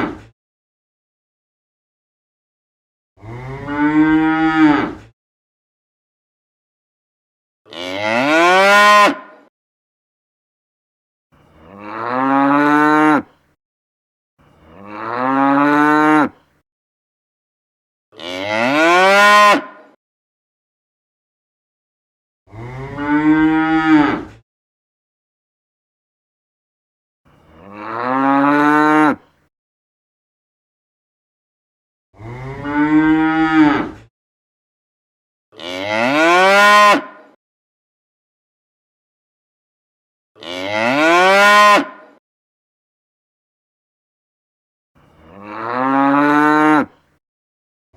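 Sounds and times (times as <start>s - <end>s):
cow mooing: 3.2s - 5.0s, 7.7s - 9.4s, 11.6s - 13.4s, 14.7s - 16.4s, 18.2s - 19.9s, 22.5s - 24.3s, 27.5s - 29.3s, 32.2s - 34.0s, 35.6s - 37.2s, 40.4s - 42.0s, 45.2s - 47.0s.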